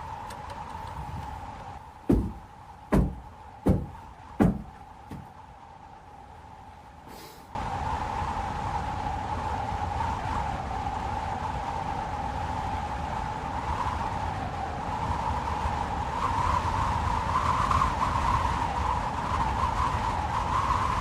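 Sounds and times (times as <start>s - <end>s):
blizzard wind howling: 0.0s - 21.0s.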